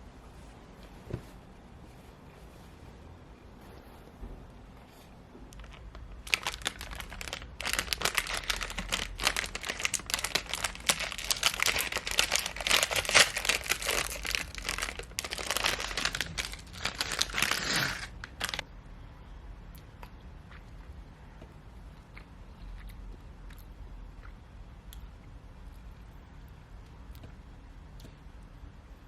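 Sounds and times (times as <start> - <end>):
packaging crinkling and tearing: 5.5 - 18.6.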